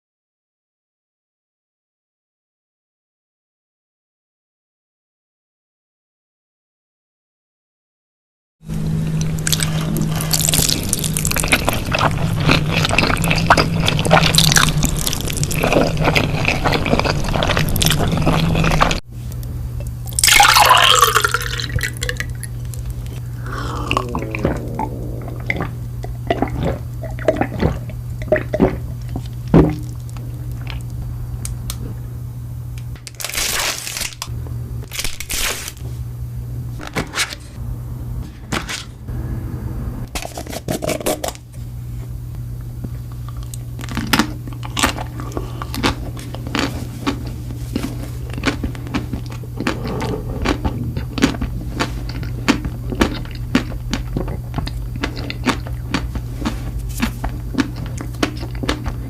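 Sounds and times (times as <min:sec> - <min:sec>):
low hum: 0:08.6 - 0:46.5
crunchy chewing: 0:09.2 - 0:19.0, 0:20.1 - 0:31.0, 0:42.8 - 0:59.0.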